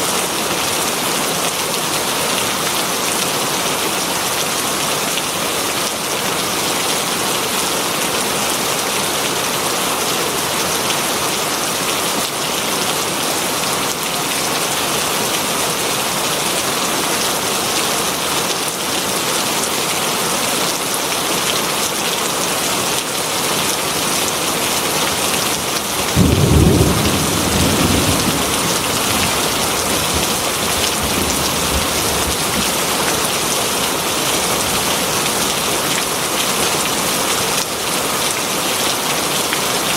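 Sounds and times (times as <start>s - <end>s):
heavy rain on leaves: 0.0s - 39.9s
thunder rumbling: 26.0s - 32.8s.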